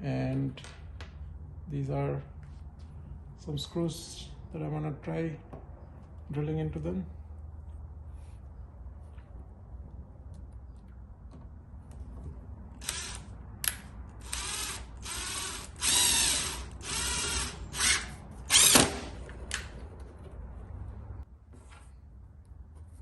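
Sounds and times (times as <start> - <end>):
impact driver driving screw: 14.2 - 19.1.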